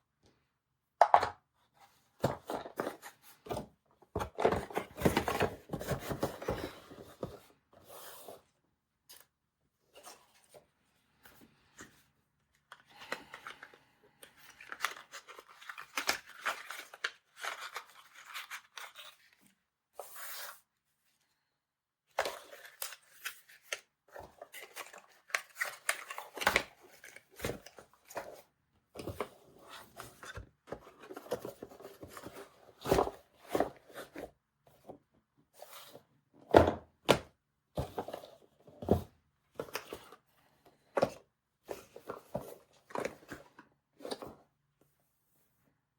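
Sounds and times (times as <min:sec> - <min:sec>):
packaging crinkling and tearing: 0:14.4 - 0:19.3.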